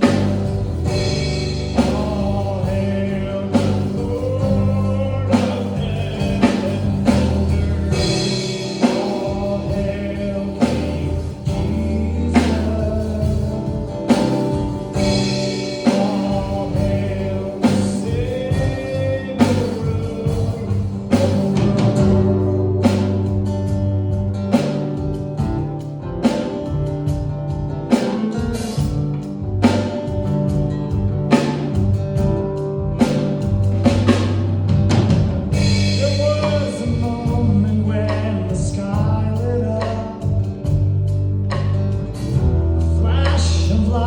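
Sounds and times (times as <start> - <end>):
band playing steady beat: 0.0 - 44.0
group singing gospel song: 0.1 - 14.4, 15.0 - 22.2.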